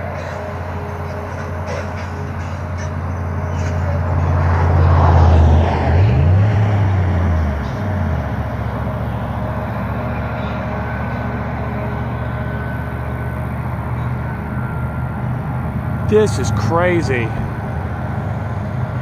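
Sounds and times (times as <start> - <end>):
heavy engine droning: 0.0 - 19.0.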